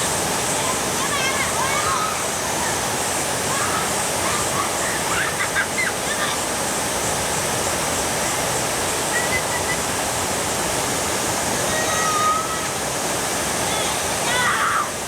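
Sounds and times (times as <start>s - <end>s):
water rushing over waterfall: 0.0s - 15.0s.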